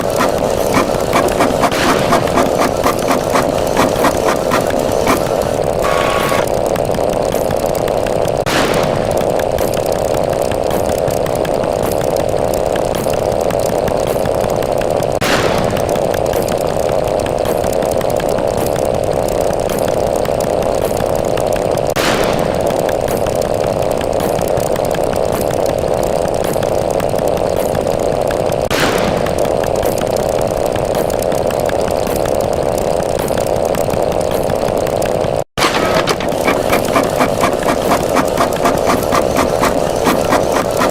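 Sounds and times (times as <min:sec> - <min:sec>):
sharp click: 0:33.1 - 0:40.9.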